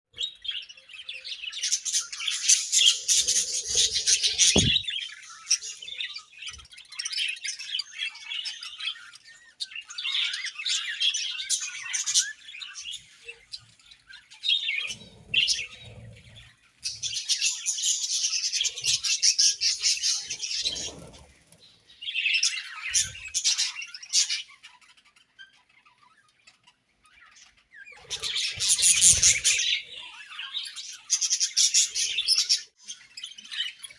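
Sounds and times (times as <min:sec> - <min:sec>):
budgerigars chirping and chattering: 0:00.2 - 0:33.9
low thumps: 0:04.4 - 0:04.9
bird squawk: 0:27.2 - 0:32.7.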